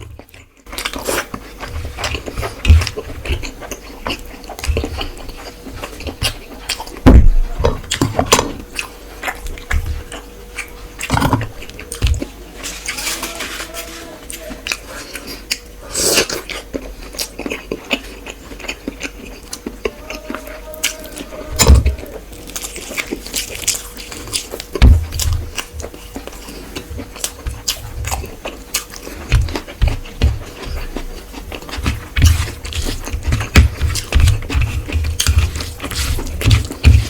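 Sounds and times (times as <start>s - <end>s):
wet chewing and smacking: 0.0s - 13.0s, 14.3s - 37.0s
heavy thumps: 7.0s - 8.6s.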